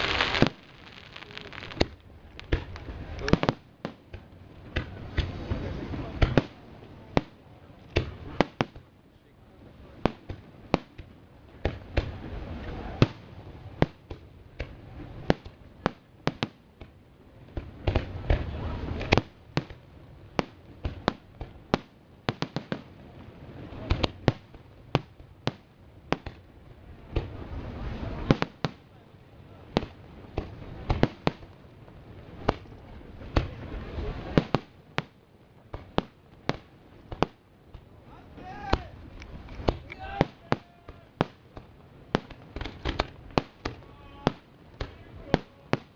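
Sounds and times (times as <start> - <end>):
low rumbling noise: 0.0 - 3.8
fireworks bangs: 0.0 - 8.9, 9.8 - 45.9.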